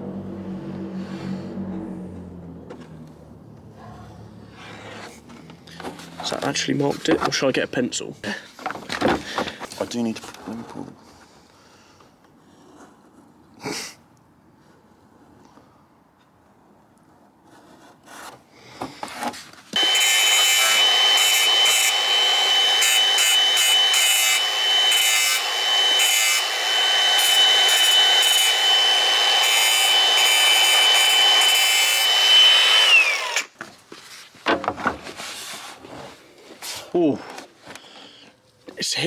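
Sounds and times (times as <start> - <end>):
angle grinder cutting: 19.8 - 33.6.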